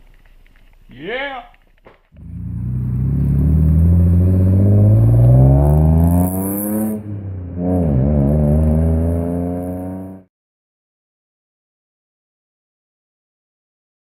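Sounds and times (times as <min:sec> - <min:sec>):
car engine revving: 0:02.2 - 0:10.3.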